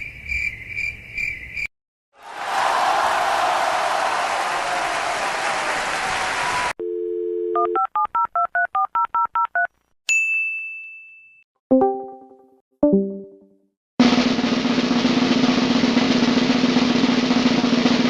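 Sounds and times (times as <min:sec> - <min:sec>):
telephone dial tone: 0:06.8 - 0:09.7
touch-tone keypad beeps: 0:07.2 - 0:09.7.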